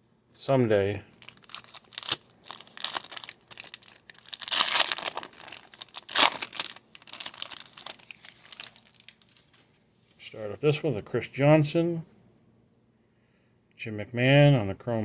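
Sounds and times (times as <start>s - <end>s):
plastic wrapper tearing and crinkling: 1.2s - 9.6s.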